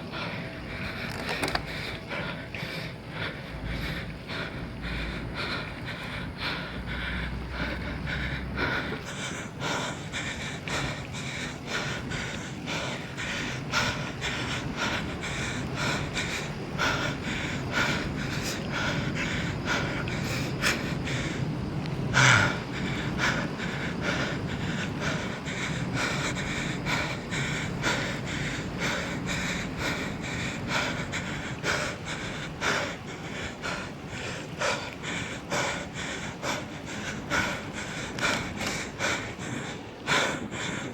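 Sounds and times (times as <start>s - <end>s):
person panting heavily: 0.0s - 40.9s.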